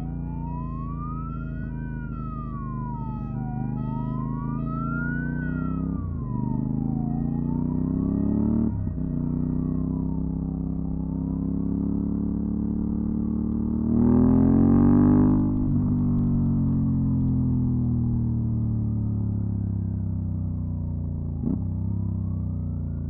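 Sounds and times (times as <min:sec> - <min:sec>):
motorcycle engine revving: 0:00.0 - 0:17.4
siren wailing: 0:00.0 - 0:23.0.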